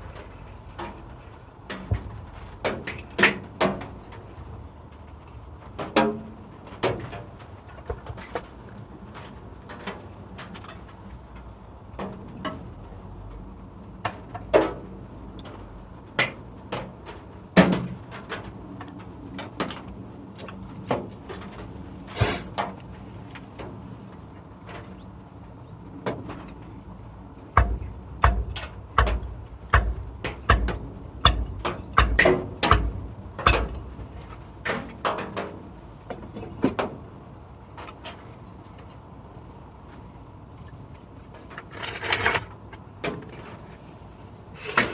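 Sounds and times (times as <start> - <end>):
heavy thuds: 27.6 - 34.3.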